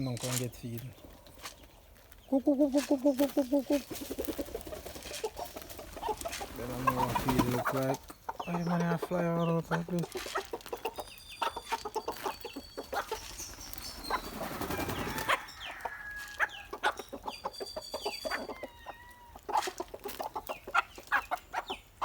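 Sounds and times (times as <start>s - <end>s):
chicks peeping: 0.0s - 22.0s
wings flapping: 2.6s - 8.0s, 12.9s - 15.5s.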